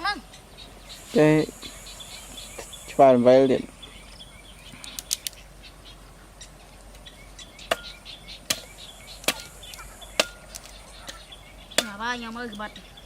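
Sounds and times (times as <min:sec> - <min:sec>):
faint bird chirps: 0:00.0 - 0:13.0
light clicks: 0:04.8 - 0:05.4
hand tool chopping strikes: 0:07.7 - 0:09.6, 0:10.2 - 0:10.6.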